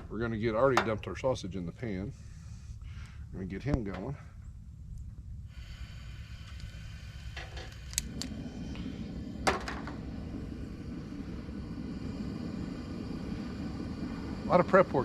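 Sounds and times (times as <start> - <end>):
gas flame roaring: 0.0 - 15.0
gas hissing: 5.0 - 15.0
stove igniter clicks: 7.4 - 8.4.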